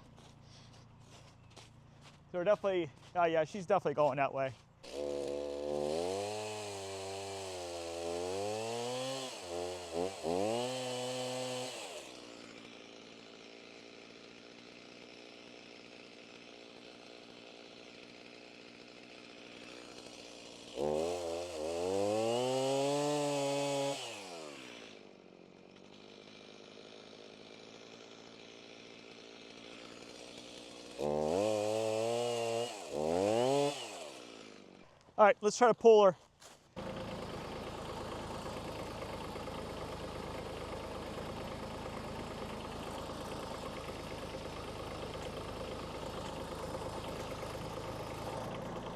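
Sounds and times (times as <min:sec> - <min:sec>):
small engine idling: 0:00.0 - 0:02.3, 0:04.6 - 0:34.9, 0:36.7 - 0:48.9
small engine revving: 0:04.8 - 0:13.6, 0:18.2 - 0:25.1, 0:25.7 - 0:34.9, 0:36.8 - 0:48.9.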